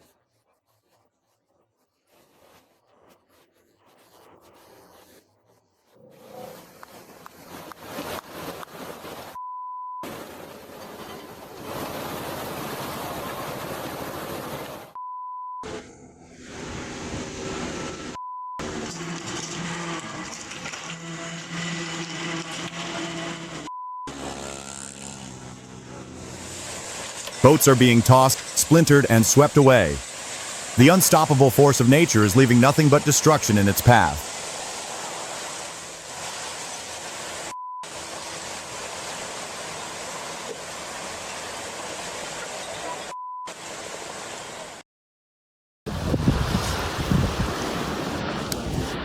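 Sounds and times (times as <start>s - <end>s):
river water rushing: 10.1s - 14.9s, 26.0s - 44.8s, 45.9s - 48.9s.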